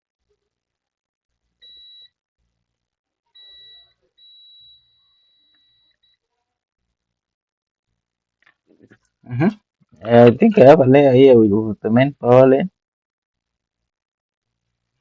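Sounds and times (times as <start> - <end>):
continuity tester beeping: 3.4 - 6.1.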